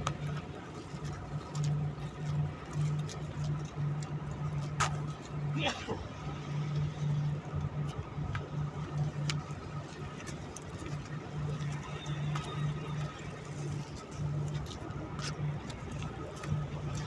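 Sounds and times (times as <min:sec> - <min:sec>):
ship engine droning: 0:00.0 - 0:17.0
faint clicks and knocks: 0:06.5 - 0:17.0.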